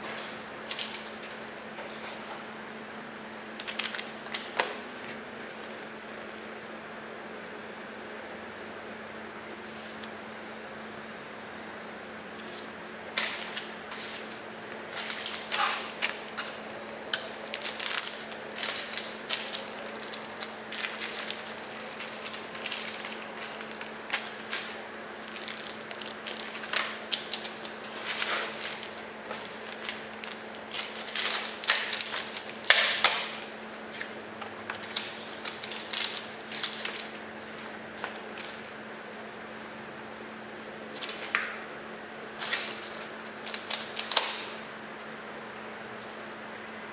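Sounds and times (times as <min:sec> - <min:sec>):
plastic and cardboard packaging rustling: 0:00.0 - 0:06.6, 0:12.4 - 0:16.6, 0:17.3 - 0:40.0, 0:40.9 - 0:41.7, 0:42.3 - 0:44.8
steady low hum: 0:00.0 - 0:46.9.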